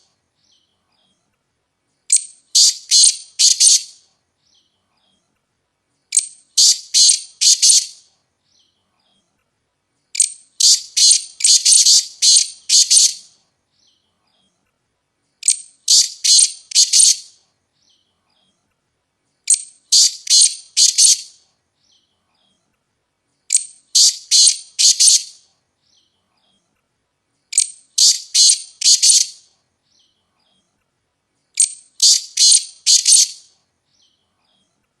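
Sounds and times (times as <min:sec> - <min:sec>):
partridge calling harshly: 0:02.1 - 0:04.0, 0:06.1 - 0:08.0, 0:10.2 - 0:13.3, 0:15.4 - 0:17.3, 0:19.5 - 0:21.4, 0:23.5 - 0:25.4, 0:27.5 - 0:29.4, 0:31.6 - 0:33.5.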